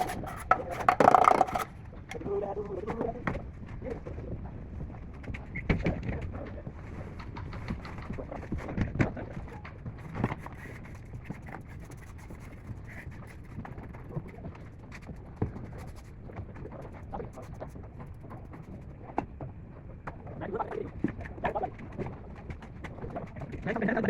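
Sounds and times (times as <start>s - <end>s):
scrapes and knocks on plaster: 0.0s - 1.8s, 5.3s - 19.5s.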